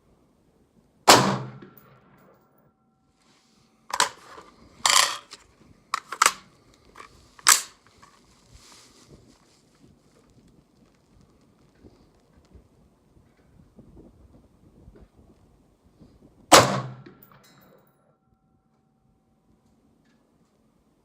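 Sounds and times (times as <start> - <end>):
gunshots: 1.1 - 1.8, 16.5 - 17.2.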